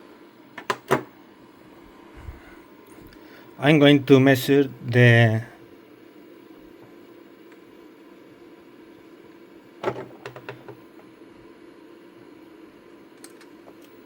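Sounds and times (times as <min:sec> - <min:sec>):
steady low hum: 0:00.0 - 0:09.8
bench equipment knocks and clicks: 0:00.6 - 0:01.1, 0:09.8 - 0:10.8.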